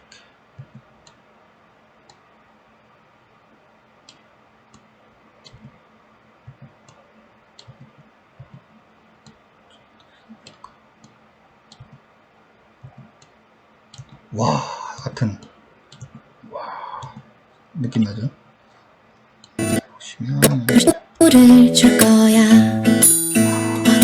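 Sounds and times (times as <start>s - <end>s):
computer mouse clicking: 0.6s - 1.2s, 4.0s - 5.8s, 6.4s - 9.4s, 10.0s - 12.1s, 12.8s - 14.2s, 15.4s - 16.2s.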